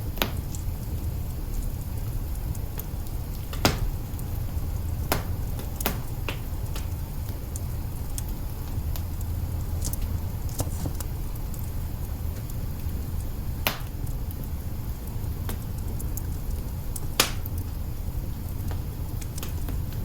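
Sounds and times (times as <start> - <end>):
fire crackles and pops: 0.0 - 20.0
low rumble of flame: 0.0 - 20.0.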